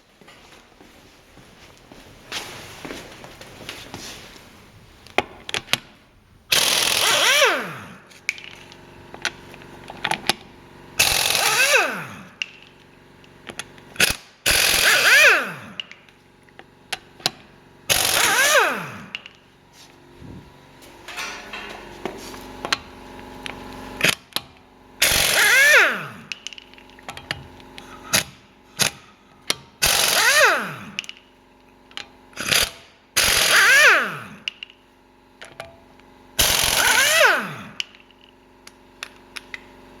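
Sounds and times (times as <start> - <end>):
air impact wrench whirring: 6.5 - 16.2, 16.9 - 19.5, 20.1 - 31.3, 32.3 - 34.8, 36.4 - 38.3
steady low hum: 15.6 - 29.9.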